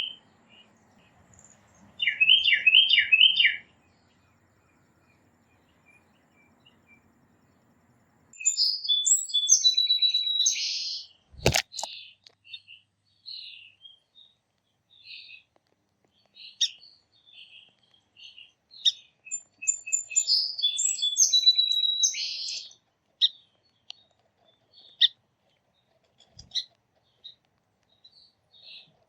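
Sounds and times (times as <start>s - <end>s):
songbirds singing: 0.0s - 29.0s
sharp knock: 11.4s - 11.9s.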